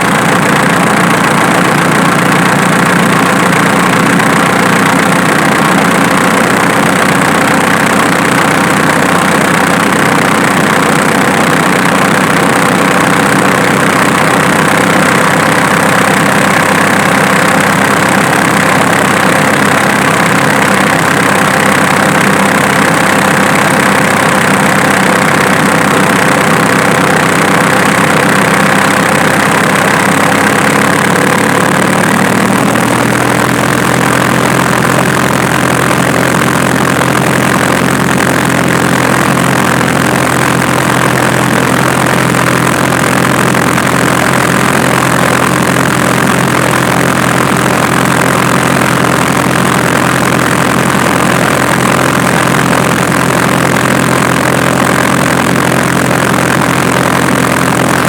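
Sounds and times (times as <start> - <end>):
diesel engine idling: 0.0 - 58.0.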